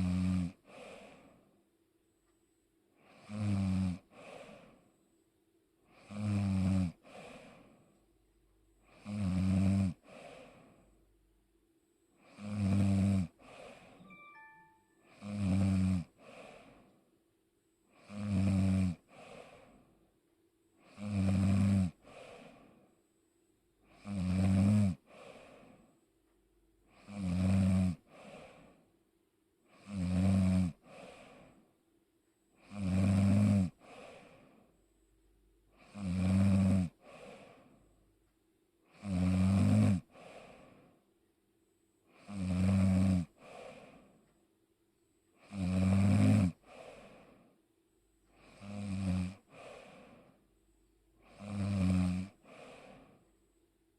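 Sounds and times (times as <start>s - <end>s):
person snoring: 0.0s - 1.3s, 3.0s - 4.7s, 5.9s - 7.7s, 8.8s - 10.7s, 12.2s - 16.8s, 17.9s - 19.8s, 20.8s - 22.7s, 23.9s - 25.8s, 26.9s - 28.8s, 29.7s - 31.6s, 32.6s - 34.5s, 35.8s - 37.7s, 38.9s - 40.9s, 42.1s - 44.1s, 45.4s - 47.4s, 48.3s - 50.4s, 51.2s - 53.2s
soft breath: 0.6s - 1.7s, 4.0s - 5.1s, 6.9s - 8.2s, 9.9s - 11.1s, 13.3s - 15.1s, 16.1s - 17.2s, 19.0s - 20.2s, 21.9s - 23.2s, 25.0s - 26.1s, 28.0s - 29.0s, 30.7s - 31.9s, 33.7s - 34.9s, 36.9s - 38.2s, 40.0s - 41.2s, 43.3s - 44.4s, 46.5s - 50.6s, 52.3s - 53.4s.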